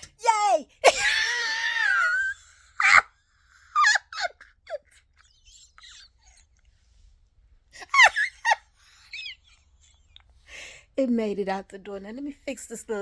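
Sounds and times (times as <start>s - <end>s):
woman squealing: 0.2s - 3.1s, 3.7s - 6.2s.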